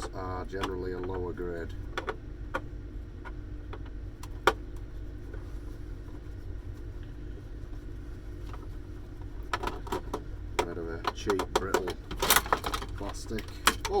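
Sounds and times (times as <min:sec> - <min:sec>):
steady low hum: 0:00.0 - 0:14.0
plastic parts clicking and knocking: 0:09.5 - 0:14.0.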